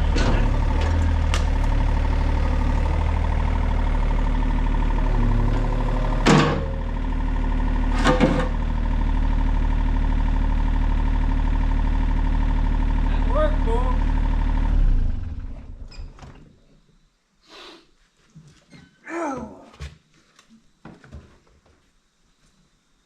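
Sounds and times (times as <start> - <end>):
diesel engine running: 0.0 - 16.0.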